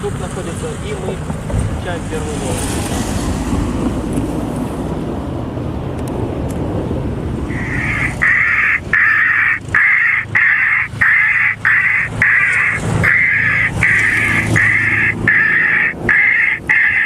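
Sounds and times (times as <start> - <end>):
loudspeaker playing bird distress cries: 7.5 - 17.0.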